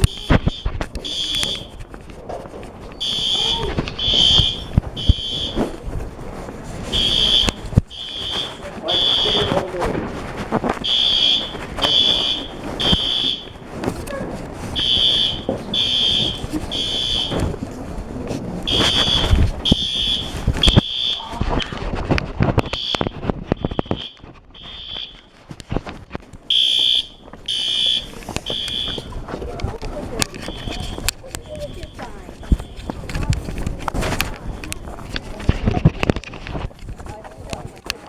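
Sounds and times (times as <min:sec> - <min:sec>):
fire alarm horn beeps: 0:00.1 - 0:01.9, 0:03.0 - 0:05.8, 0:06.8 - 0:09.8, 0:10.8 - 0:13.7, 0:14.6 - 0:17.6, 0:18.7 - 0:21.4, 0:22.6 - 0:25.3, 0:26.5 - 0:29.2, 0:30.4 - 0:33.0.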